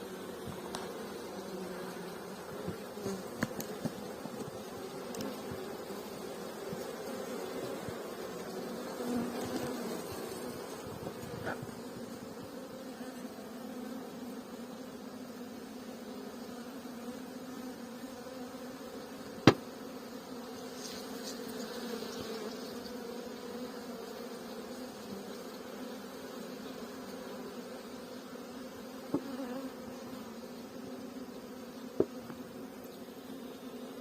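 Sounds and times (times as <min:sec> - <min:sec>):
honeybees buzzing: 0:00.0 - 0:34.0
sharp knocks: 0:19.4 - 0:19.6.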